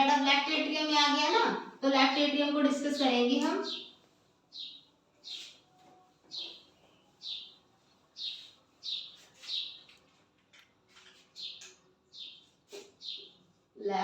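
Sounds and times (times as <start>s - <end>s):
small bird chirping: 2.8s - 7.6s, 8.2s - 10.0s, 11.3s - 13.5s.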